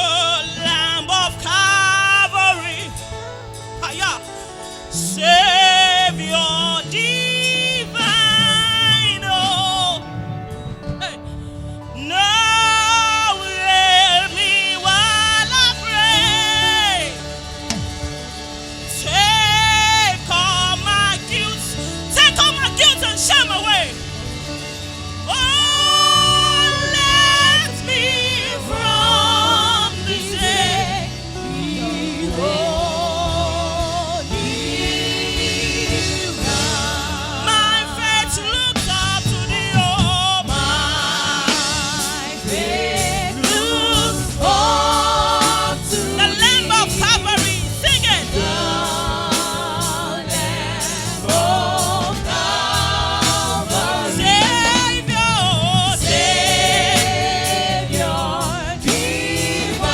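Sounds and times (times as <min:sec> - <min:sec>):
choir singing gospel: 0:00.0 - 0:59.9
music accompaniment: 0:00.0 - 0:59.9.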